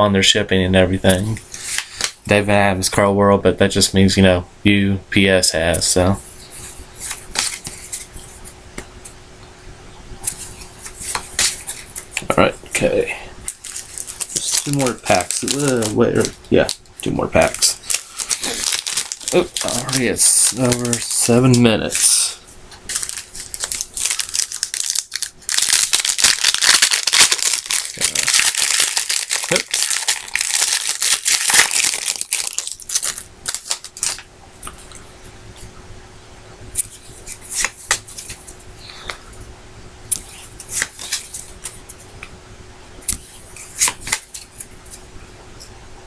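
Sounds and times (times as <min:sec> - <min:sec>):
card pack wrapper crinkling and tearing: 0:01.1 - 0:02.2, 0:07.0 - 0:08.1, 0:12.9 - 0:34.2, 0:36.8 - 0:38.5, 0:40.1 - 0:41.8, 0:43.1 - 0:44.7
cards being handled: 0:06.5 - 0:08.6, 0:10.2 - 0:12.3, 0:13.5 - 0:22.2, 0:22.8 - 0:35.0, 0:36.8 - 0:39.2, 0:40.1 - 0:42.0, 0:43.1 - 0:45.0.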